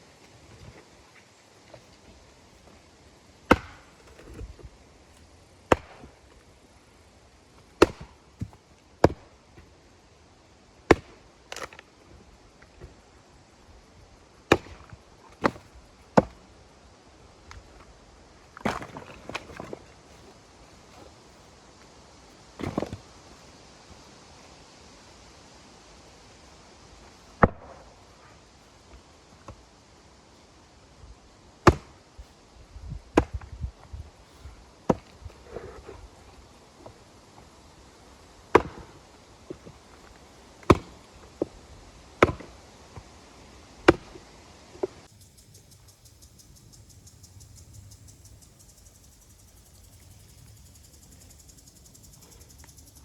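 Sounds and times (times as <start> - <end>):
insects chirping: 0.0 - 53.0
axe chopping wood: 3.4 - 4.5, 5.7 - 6.2, 7.8 - 9.4, 10.9 - 11.8, 14.5 - 16.4, 18.6 - 19.8, 22.6 - 23.0, 27.4 - 27.9, 31.6 - 32.0, 33.2 - 33.5, 34.9 - 35.9, 38.5 - 39.7, 40.6 - 41.5, 42.2 - 42.6, 43.8 - 44.2
wood knocks and thuds: 7.8 - 9.2, 14.5 - 16.4, 18.6 - 19.8, 22.6 - 23.1, 38.5 - 39.8.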